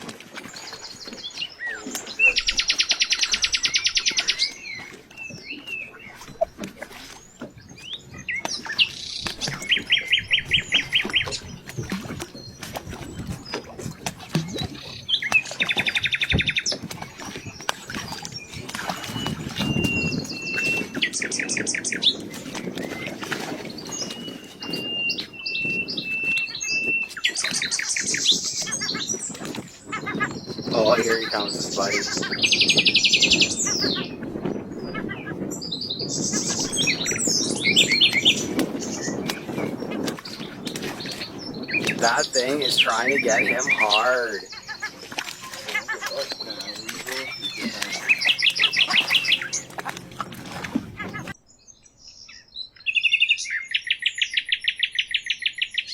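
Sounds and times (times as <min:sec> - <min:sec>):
songbirds chirping and whistling: 0:00.0 - 0:55.9
rapid bird trill: 0:41.2 - 0:50.4.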